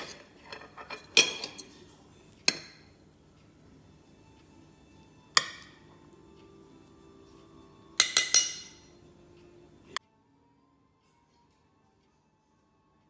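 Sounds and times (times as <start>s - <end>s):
dishes and utensils clinking: 0.0s - 3.0s, 5.3s - 6.2s, 7.9s - 9.0s.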